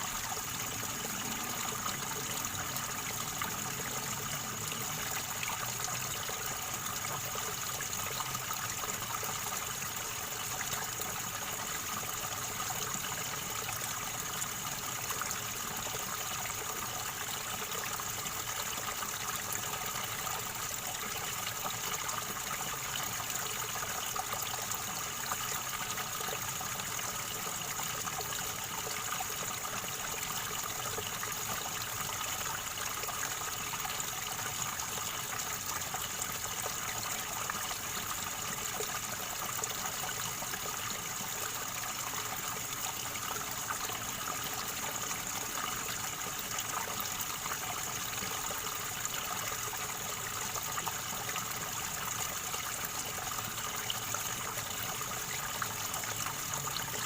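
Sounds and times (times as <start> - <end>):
river water gurgling: 0.0 - 57.0.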